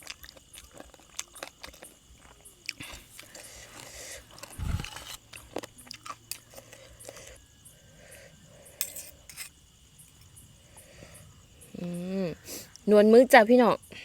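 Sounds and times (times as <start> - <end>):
chewing and crunching: 0.0 - 7.5
crickets chirping: 0.0 - 14.0.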